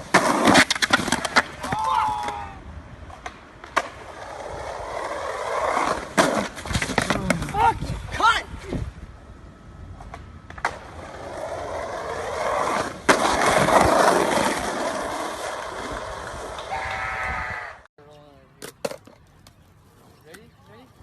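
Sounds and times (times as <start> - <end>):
skateboard clack: 0.0 - 2.4, 3.1 - 7.6, 10.0 - 11.0
skateboard wheels rolling on pavement: 0.0 - 17.9
faint short yells: 1.6 - 2.6.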